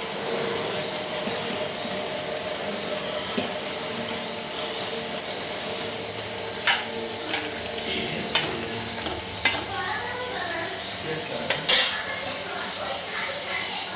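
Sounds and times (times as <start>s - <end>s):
spoon stirring: 6.6s - 13.1s
spoon clinking against pan: 11.5s - 12.2s.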